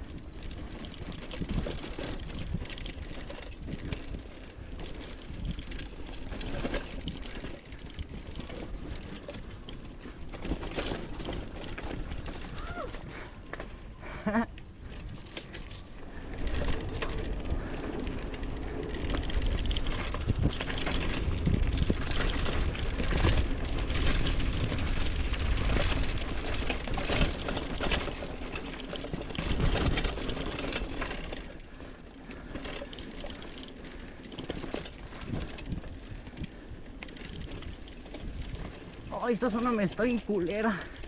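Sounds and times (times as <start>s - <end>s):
bike rattling over bumps: 0.0s - 41.0s
bike tyres on dirt: 0.0s - 41.0s
wind on microphone: 16.3s - 27.4s.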